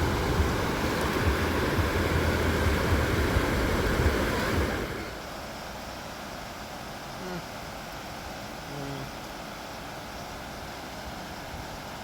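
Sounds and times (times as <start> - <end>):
wind buffeting microphone: 0.0 - 5.2.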